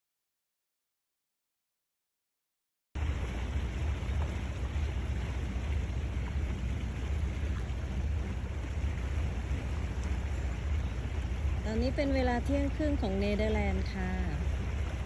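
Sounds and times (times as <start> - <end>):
wind on microphone: 3.0 - 15.0.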